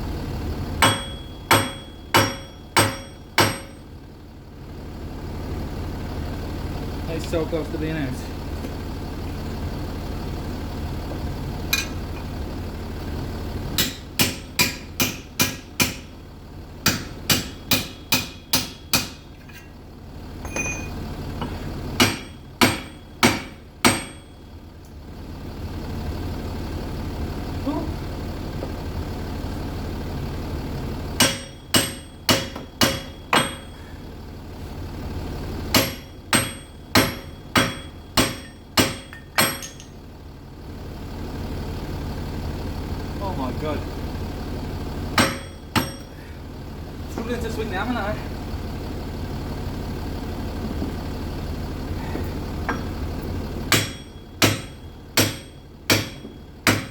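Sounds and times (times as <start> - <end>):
hammer striking metal: 0.8 - 3.9, 11.7 - 12.0, 13.8 - 16.1, 16.8 - 19.7, 20.4 - 21.0, 22.0 - 24.3, 31.2 - 33.8, 35.7 - 40.0, 45.2 - 46.1, 53.7 - 56.9.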